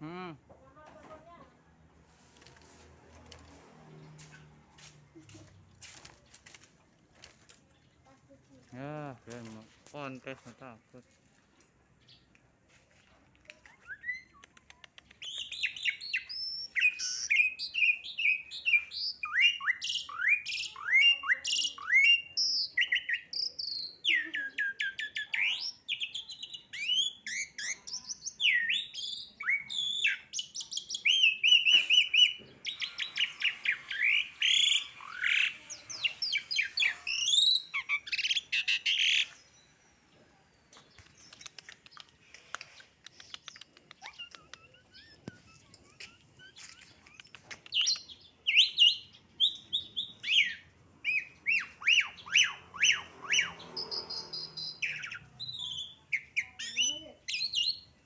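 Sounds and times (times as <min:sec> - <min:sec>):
songbird singing: 0:13.4 - 0:58.0.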